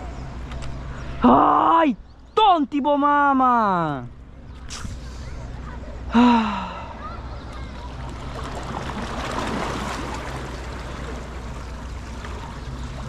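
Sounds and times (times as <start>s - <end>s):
water splashing and churning: 6.7s - 13.0s.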